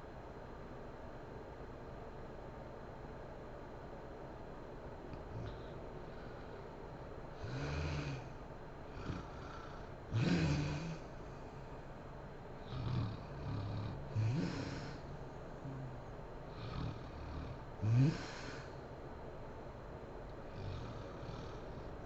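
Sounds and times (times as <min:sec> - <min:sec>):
woman snoring: 0:05.2 - 0:06.5, 0:07.3 - 0:11.6, 0:12.6 - 0:18.8, 0:20.5 - 0:22.0.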